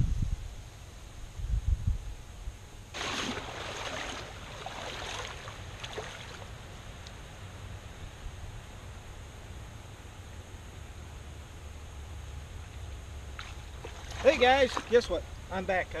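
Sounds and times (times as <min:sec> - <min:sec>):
water and gravel sloshing in a pan: 0:03.0 - 0:06.5.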